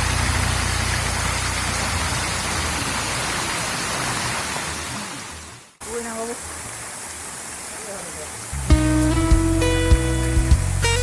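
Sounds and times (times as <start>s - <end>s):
low hum: 0.0s - 3.5s
waterfall rushing: 0.0s - 11.0s.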